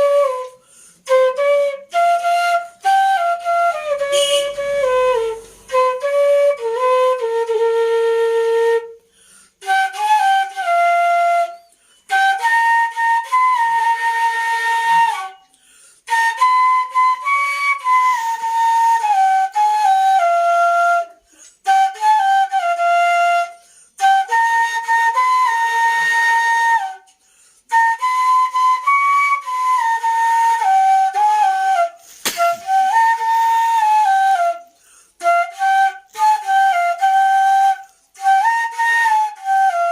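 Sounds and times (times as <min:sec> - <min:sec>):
slow flute melody: 0:00.0 - 0:39.9.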